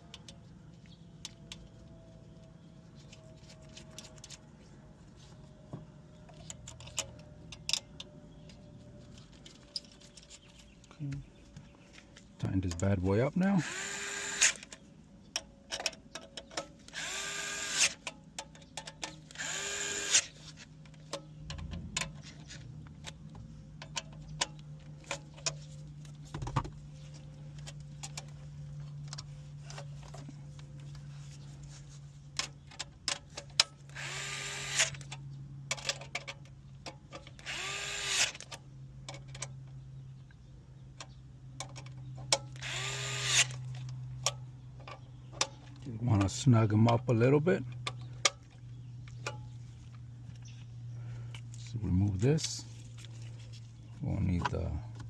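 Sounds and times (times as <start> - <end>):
low steady hum: 0.0 - 55.0
power drill driving bolts: 13.6 - 14.7, 16.9 - 18.0, 19.3 - 20.4, 33.9 - 35.1, 37.3 - 38.5, 42.5 - 43.7.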